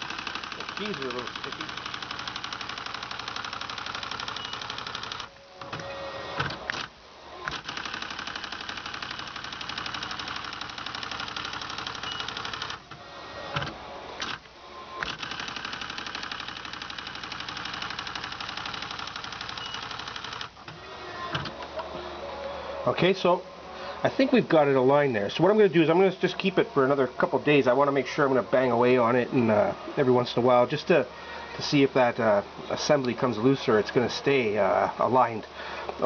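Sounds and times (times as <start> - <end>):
typewriter print-hammer strikes: 0.0 - 12.9, 15.0 - 20.6.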